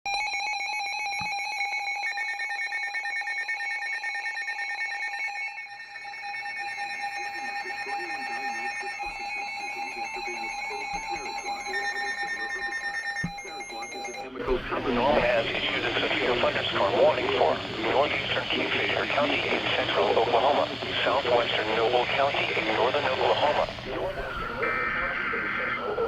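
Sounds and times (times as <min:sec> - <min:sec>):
steady electronic alert tones: 0:07.2 - 0:26.0
rapid buzzing pulse: 0:14.5 - 0:26.0.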